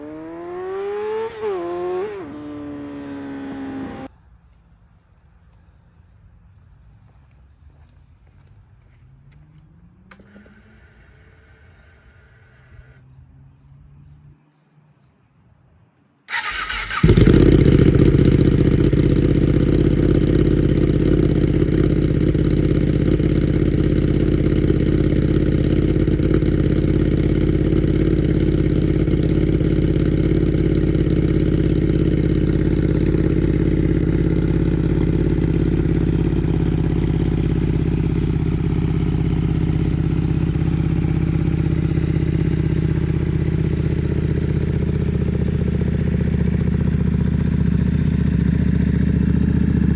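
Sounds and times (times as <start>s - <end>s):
motorcycle engine starting and idling: 8.3s - 13.1s, 16.3s - 49.9s.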